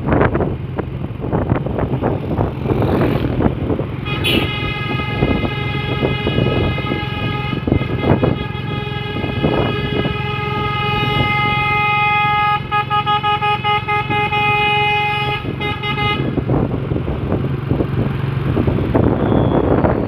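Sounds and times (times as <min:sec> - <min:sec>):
road noise: 0:00.0 - 0:20.0
truck engine: 0:00.0 - 0:20.0
truck air horn blasts: 0:04.0 - 0:16.6.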